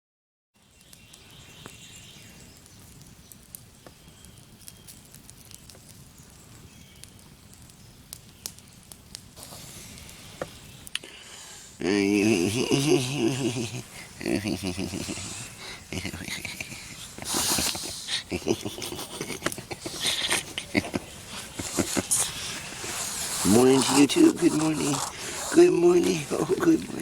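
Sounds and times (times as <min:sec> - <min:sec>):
campfire crackling: 0:00.6 - 0:27.0
loud voice: 0:11.8 - 0:13.8.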